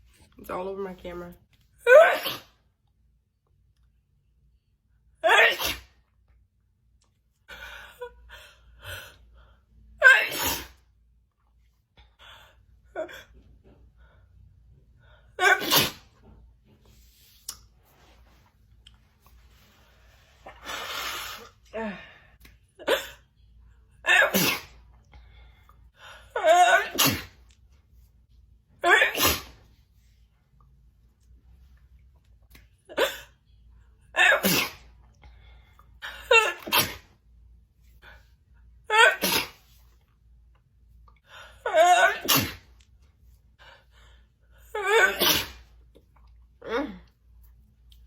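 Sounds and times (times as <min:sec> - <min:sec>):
woman sneezing: 0:01.9 - 0:02.6, 0:05.2 - 0:05.9, 0:10.0 - 0:10.8, 0:15.4 - 0:16.1, 0:24.1 - 0:24.8, 0:26.6 - 0:27.4, 0:28.8 - 0:29.6, 0:34.2 - 0:34.9, 0:36.3 - 0:37.1, 0:38.9 - 0:39.7, 0:41.8 - 0:42.7, 0:44.8 - 0:45.7.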